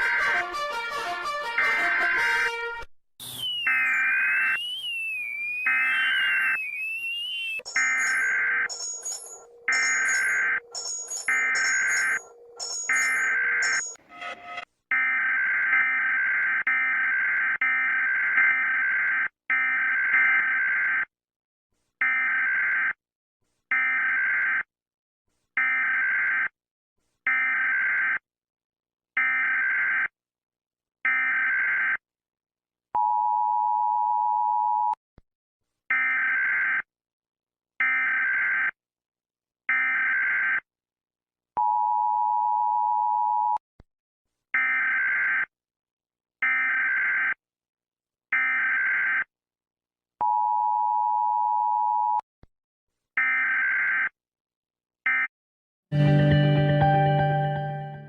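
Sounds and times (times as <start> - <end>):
harsh electronic alarm beeps: 3.2 - 21.1.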